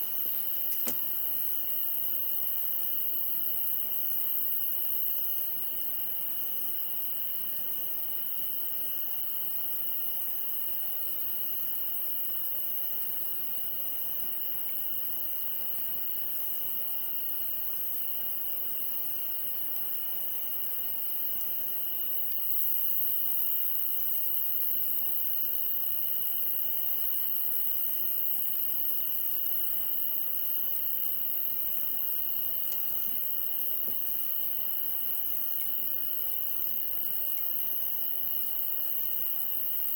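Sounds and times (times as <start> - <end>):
soft background hiss: 0.0 - 5.1
crickets trilling: 0.0 - 39.9
regular cricket chirp: 0.0 - 39.9.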